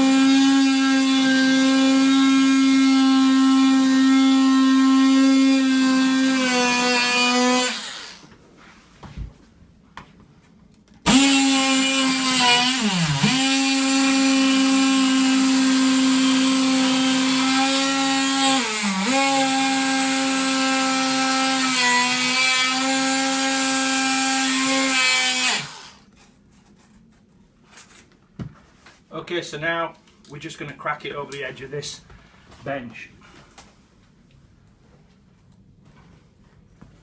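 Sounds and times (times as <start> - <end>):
multi-tool cutting acrylic: 0.0 - 8.3, 11.0 - 27.0.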